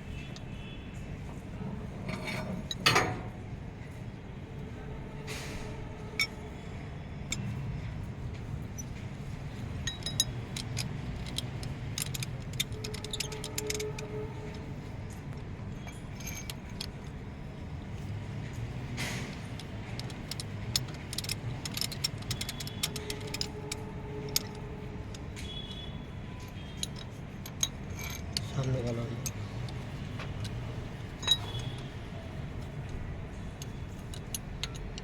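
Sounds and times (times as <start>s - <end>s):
metal tools clinking: 2.0s - 3.4s, 9.8s - 14.7s, 15.7s - 17.2s, 19.1s - 35.0s.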